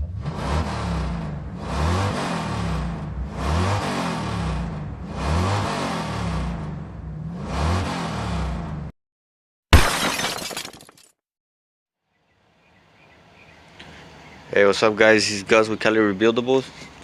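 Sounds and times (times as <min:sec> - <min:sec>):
car engine revving: 0:00.0 - 0:08.9.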